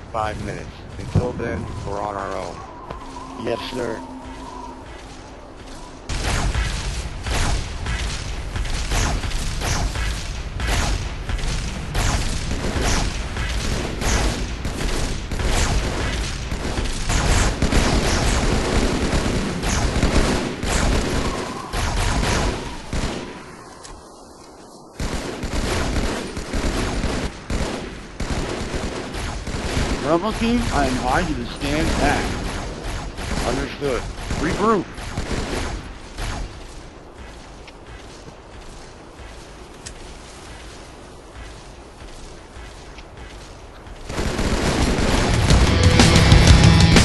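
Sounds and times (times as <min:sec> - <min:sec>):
heavy gunfire: 0:06.1 - 0:23.4, 0:25.0 - 0:36.7, 0:44.1 - 0:47.0.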